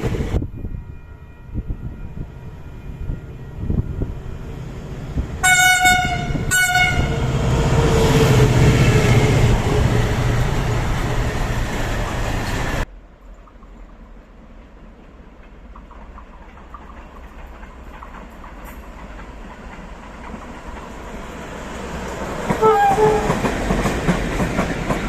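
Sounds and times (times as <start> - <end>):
train running noise: 0.0 - 25.0
train horn blasts: 5.4 - 7.6, 22.5 - 23.5.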